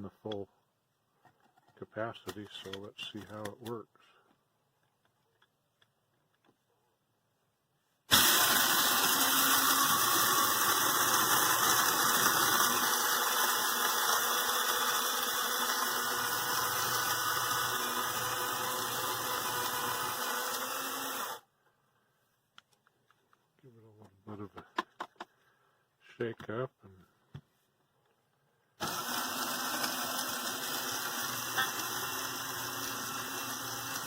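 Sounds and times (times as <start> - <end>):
blade coffee grinder grinding beans: 8.1 - 21.4, 28.8 - 34.0.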